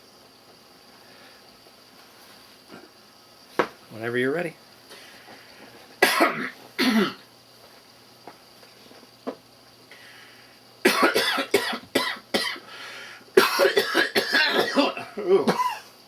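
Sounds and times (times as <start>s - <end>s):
person coughing: 6.0s - 7.2s, 10.9s - 12.6s, 13.4s - 15.8s.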